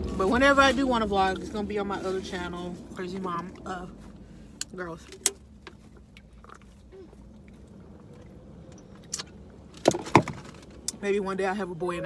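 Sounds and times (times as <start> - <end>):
quiet chewing: 2.8 - 9.8.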